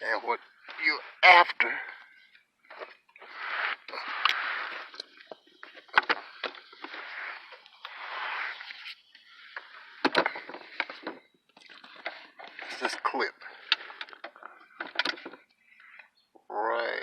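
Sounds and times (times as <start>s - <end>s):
clicks and knocks of handled parts: 13.6s - 15.5s.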